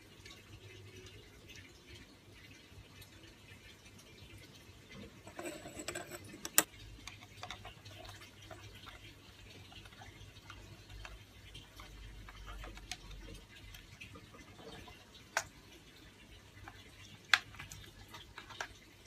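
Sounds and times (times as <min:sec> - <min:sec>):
small handling clicks and taps: 0:05.3 - 0:07.8.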